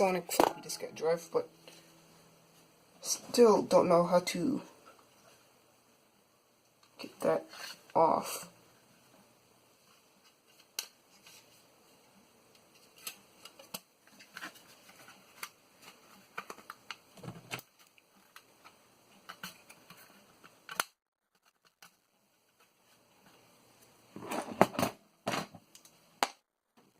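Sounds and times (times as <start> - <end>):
small clicks and scrapes of parts: 12.5 - 23.3.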